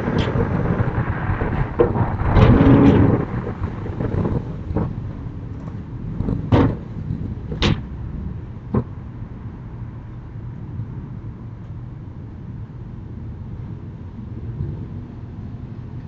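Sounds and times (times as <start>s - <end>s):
low rumble: 0.0s - 16.0s
sliding shutters knocking: 5.6s - 7.9s.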